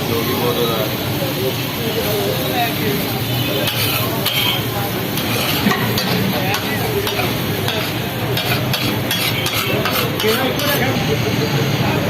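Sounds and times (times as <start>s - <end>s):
food sizzling in a pan: 0.0s - 11.0s
stirring in a pan: 3.0s - 10.9s.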